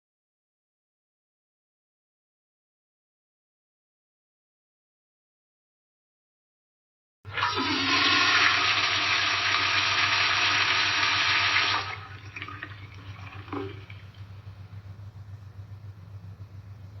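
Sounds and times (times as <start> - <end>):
toilet flushing: 7.3 - 14.4
water trickling: 11.8 - 14.5.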